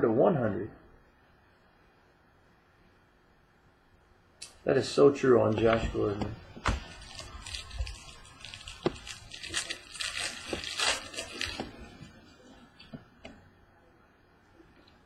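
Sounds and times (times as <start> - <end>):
card packaging rustling: 6.6 - 12.9.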